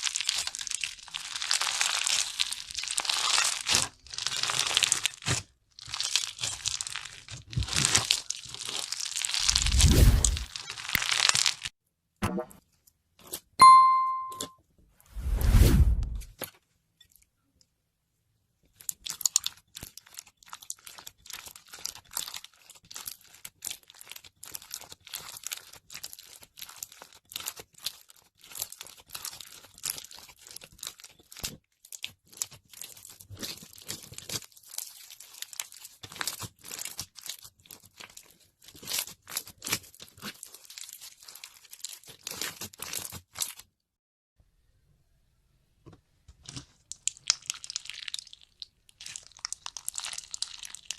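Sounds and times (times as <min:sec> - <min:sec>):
slime crackling by hand: 0:32.3 - 0:43.6, 0:46.4 - 0:50.9.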